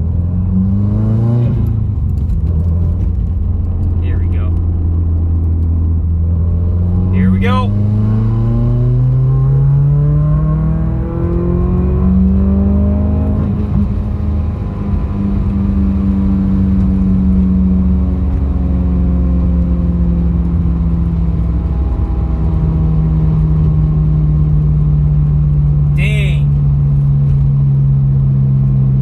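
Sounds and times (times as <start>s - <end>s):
turbocharged engine accelerating: 0.3s - 23.8s.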